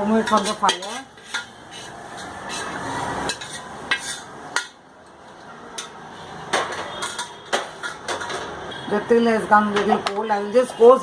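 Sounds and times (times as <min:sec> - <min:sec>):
utensil clinking against pan: 0:00.1 - 0:01.9, 0:05.8 - 0:08.6
spatula scraping coconut in pan: 0:00.1 - 0:04.7.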